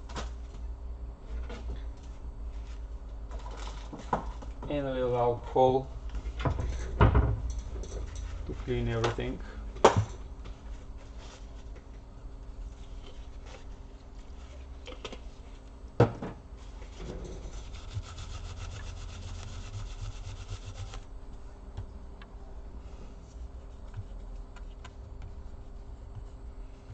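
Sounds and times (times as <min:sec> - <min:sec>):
paper scrubbing metal parts: 0:16.8 - 0:21.1.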